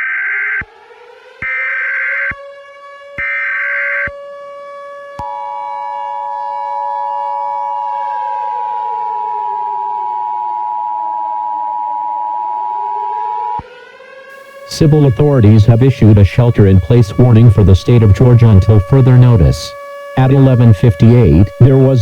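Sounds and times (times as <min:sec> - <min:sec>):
data burst: 0:14.7 - 0:22.0.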